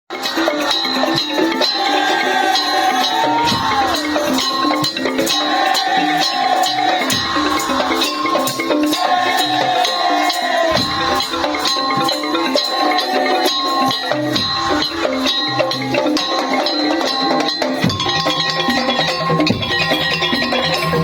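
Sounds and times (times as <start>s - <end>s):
fast percussion ensemble music: 0.1s - 21.0s.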